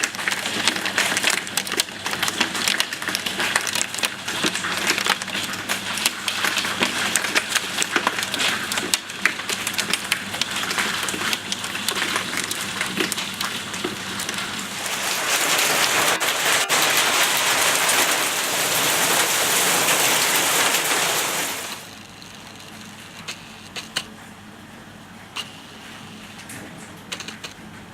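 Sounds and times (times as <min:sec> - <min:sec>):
hail ticking on a surface: 0:00.0 - 0:22.1
heavy hail and rain hiss: 0:00.2 - 0:22.0.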